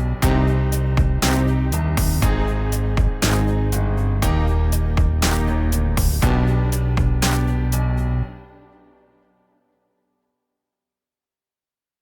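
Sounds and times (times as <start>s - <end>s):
guitar music with steady beat: 0.0s - 8.2s.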